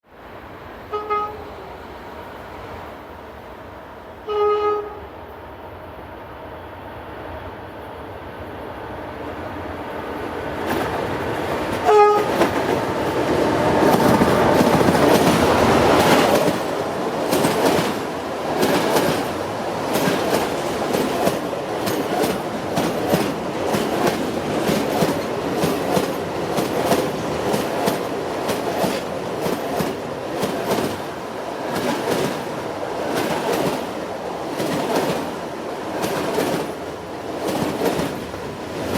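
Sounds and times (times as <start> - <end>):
train passing: 0.1 - 38.9
train horn toot: 0.9 - 1.6, 4.2 - 5.1, 11.8 - 12.5
wheels clacking over rail joints: 10.6 - 38.9.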